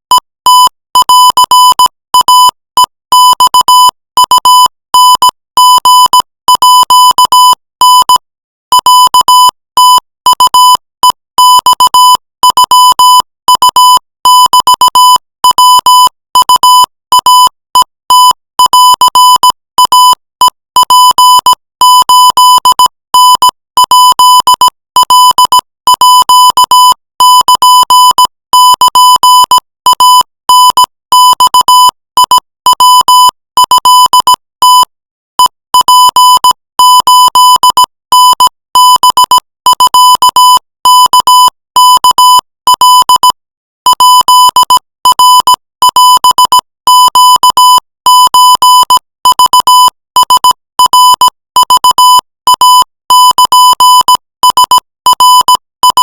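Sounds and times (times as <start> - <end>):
morse code beeps: 3.2 - 8.2, 18.6 - 20.2, 24.0 - 34.9, 45.3 - 52.6.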